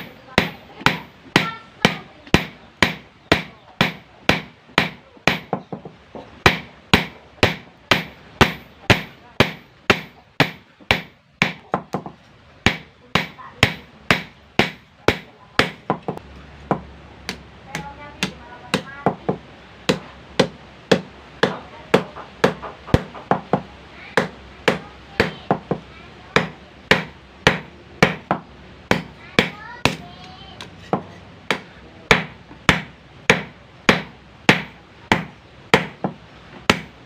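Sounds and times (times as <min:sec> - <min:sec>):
hammer striking steel on anvil: 0:00.0 - 0:05.8, 0:06.5 - 0:19.0, 0:26.4 - 0:30.0.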